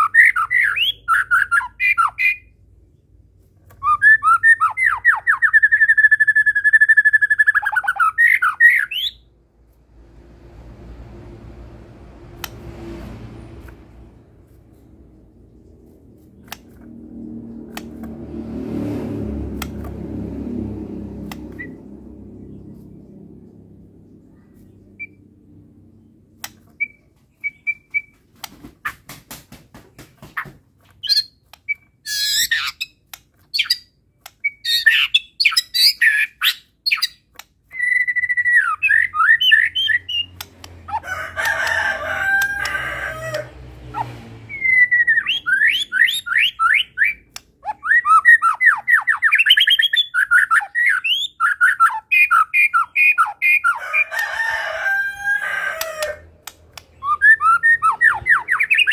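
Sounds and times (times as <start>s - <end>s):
songbird singing: 0.0s - 9.3s, 21.1s - 28.2s, 33.6s - 41.0s, 44.0s - 53.8s, 56.4s - 58.9s.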